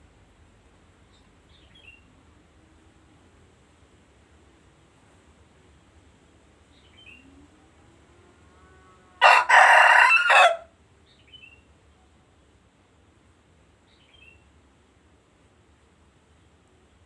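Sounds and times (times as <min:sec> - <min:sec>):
rooster crowing: 0:08.5 - 0:10.7.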